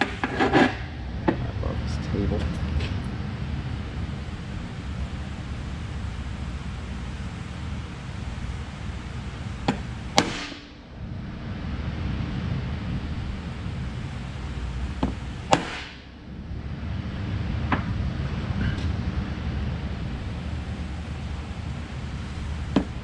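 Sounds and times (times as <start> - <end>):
steady low hum: 0.0 - 23.0
hammer striking steel: 10.2 - 10.8, 15.5 - 16.1.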